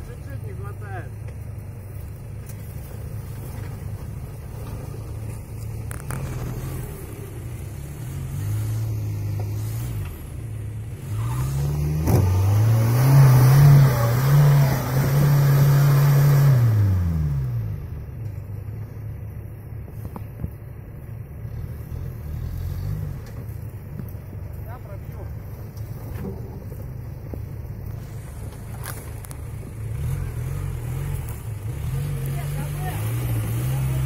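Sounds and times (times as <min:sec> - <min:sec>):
car engine revving: 0:01.6 - 0:18.1, 0:21.4 - 0:24.1, 0:27.8 - 0:34.0.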